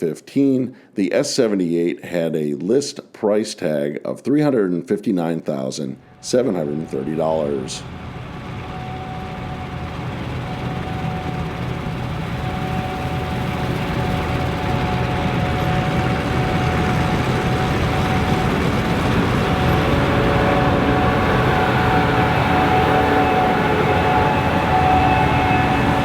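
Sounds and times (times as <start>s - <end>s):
combine harvester running: 6.0s - 26.0s.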